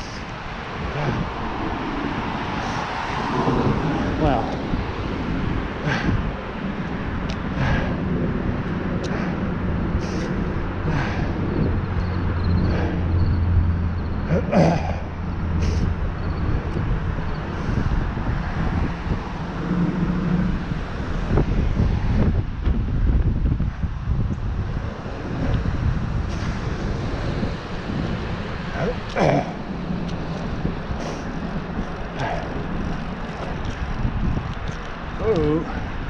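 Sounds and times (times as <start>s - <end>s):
bicycle tyre noise: 0.0s - 36.0s
wind rumbling on microphone: 0.0s - 36.0s
rider's heavy breaths: 0.9s - 1.5s, 2.5s - 3.2s, 5.7s - 6.4s, 7.4s - 16.0s, 28.5s - 33.9s.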